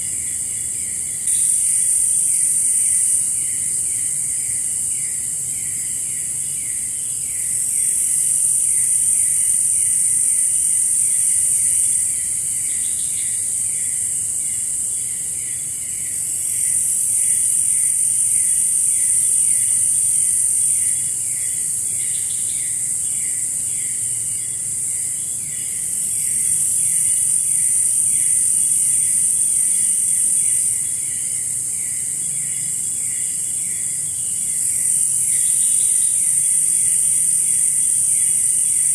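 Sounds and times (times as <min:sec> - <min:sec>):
insect chirps: 0:00.0 - 0:38.9
insects buzzing: 0:00.0 - 0:38.9.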